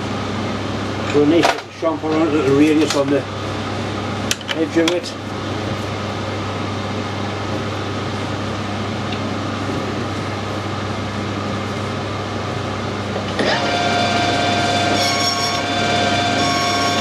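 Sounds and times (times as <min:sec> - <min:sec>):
metal lathe humming: 0:05.2 - 0:17.0
high-pitched whine: 0:13.4 - 0:17.0.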